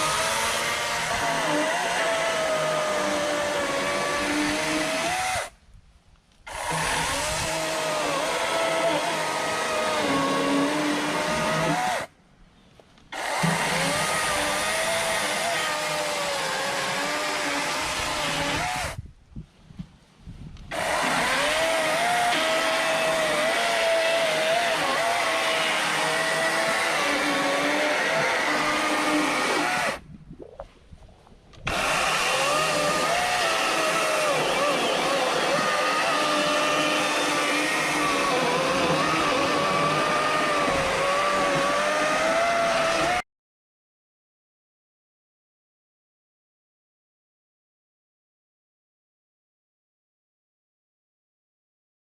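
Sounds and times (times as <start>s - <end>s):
electric chainsaw whine: 0.0s - 5.5s, 6.5s - 12.1s, 13.1s - 19.0s, 20.7s - 30.0s, 31.7s - 43.2s.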